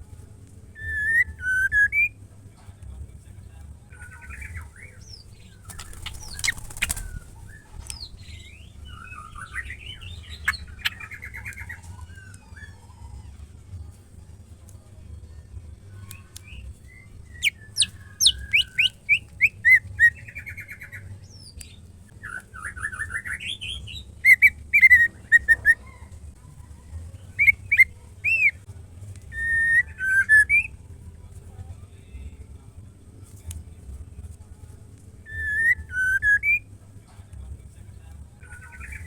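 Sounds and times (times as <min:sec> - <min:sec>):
low steady hum: 0:00.0 - 0:39.0
bird singing whistled phrases: 0:00.8 - 0:02.2, 0:16.4 - 0:20.9, 0:29.3 - 0:30.7, 0:35.3 - 0:36.6.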